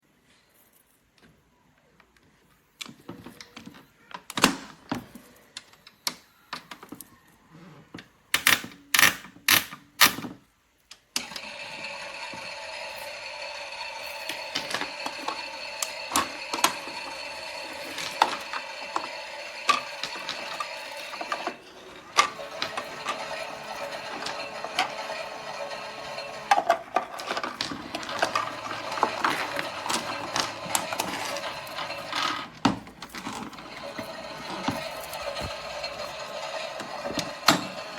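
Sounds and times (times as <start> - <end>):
toy handling clicks and knocks: 8.3 - 37.9
toy drum mechanism whirring: 11.2 - 37.9.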